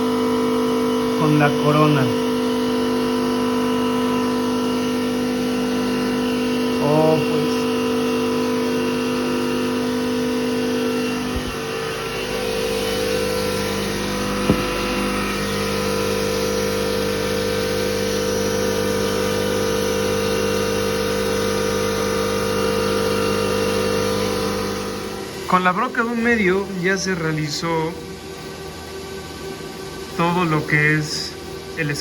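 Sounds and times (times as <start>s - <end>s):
milling machine spindle whine: 0.0s - 32.0s
sharp knock: 14.4s - 15.0s.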